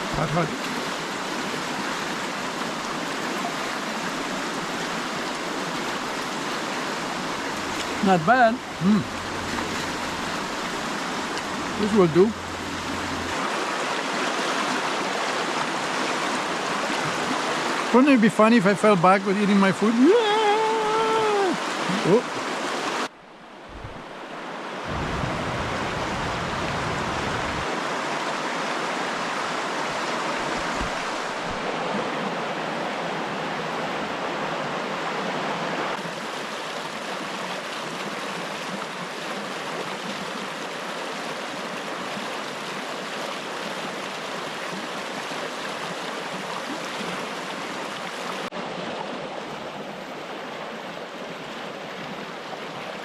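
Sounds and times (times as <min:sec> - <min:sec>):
river water flowing: 0:00.0 - 0:53.0
low rumble: 0:08.6 - 0:13.4.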